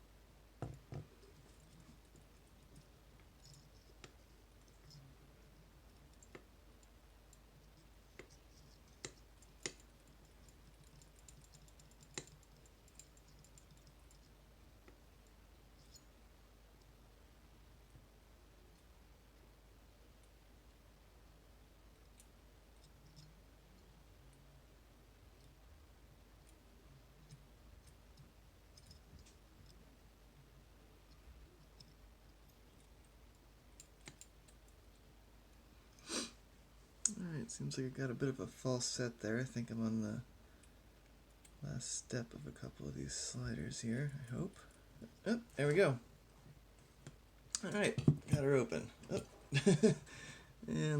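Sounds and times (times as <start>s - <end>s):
faint light ticking: 1.1s - 17.0s, 21.6s - 24.5s, 25.1s - 36.0s.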